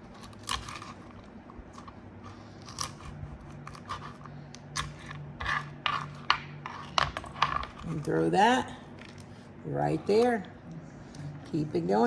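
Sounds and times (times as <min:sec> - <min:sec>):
crisp bacon crunching when cut: 0:00.0 - 0:01.2.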